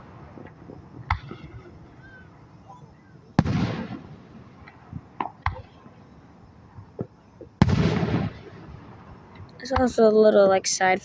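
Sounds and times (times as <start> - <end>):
small firework pops: 0.0 - 1.8, 2.7 - 6.0, 6.7 - 9.9
crackling rumble: 0.0 - 11.0
loud firework bang: 3.4 - 5.8, 7.0 - 9.1.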